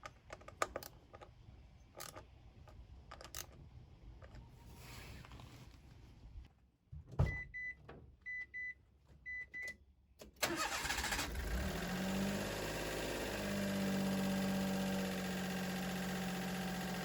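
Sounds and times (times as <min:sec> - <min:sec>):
van engine cranking and idling: 0:10.3 - 0:17.0.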